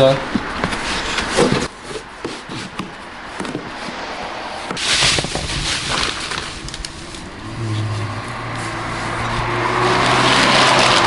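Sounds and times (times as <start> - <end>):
packaging crinkling and rustling: 4.8 - 7.4, 10.0 - 11.0.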